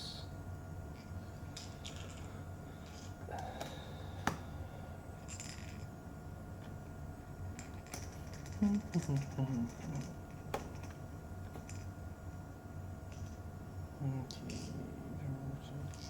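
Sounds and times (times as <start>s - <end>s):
steady low hum: 0.0s - 16.0s
small parts and screws clicking: 1.0s - 3.1s, 5.2s - 5.9s, 7.6s - 11.0s, 11.6s - 11.9s.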